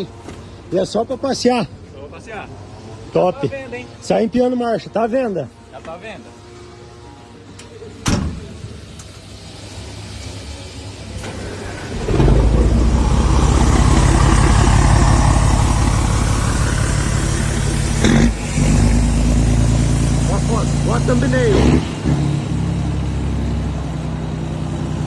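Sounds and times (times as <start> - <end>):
truck engine accelerating: 9.0 - 25.0.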